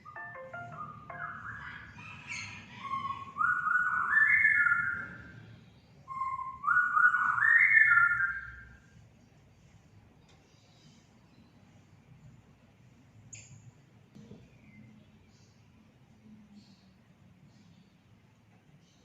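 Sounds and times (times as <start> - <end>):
thrush singing whistled notes: 0.0 - 8.8.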